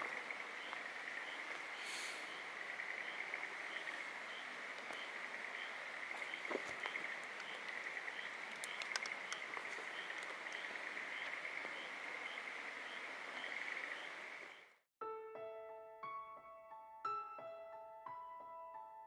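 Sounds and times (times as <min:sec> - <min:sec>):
frogs trilling in chorus: 0:00.0 - 0:14.7
sharp light clicks: 0:08.5 - 0:10.7.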